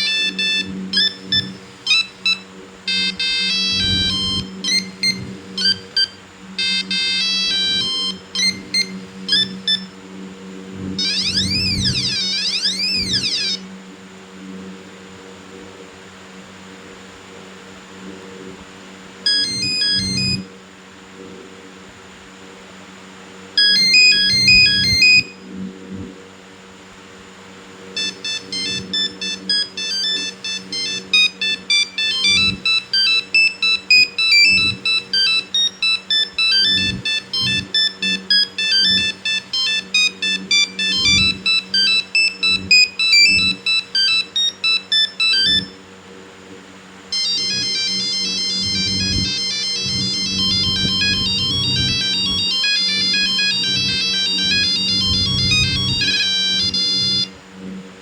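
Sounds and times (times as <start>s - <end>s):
monophonic phone ringtone beeps: 0.0s - 10.0s, 11.0s - 13.6s, 19.3s - 20.4s, 23.6s - 25.4s, 28.0s - 45.8s, 47.1s - 57.3s.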